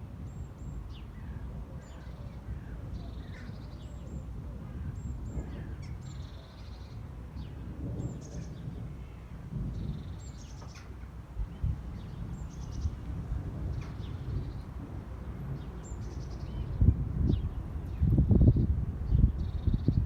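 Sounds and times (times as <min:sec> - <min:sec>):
songbird calling: 0:00.3 - 0:14.8.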